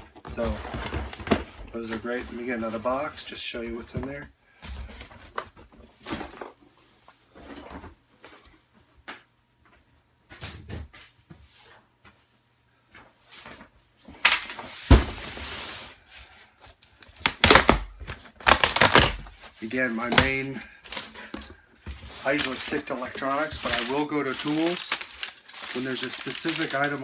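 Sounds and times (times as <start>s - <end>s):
packaging rustling: 14.7s - 27.0s
box contents knocking: 17.3s - 27.0s.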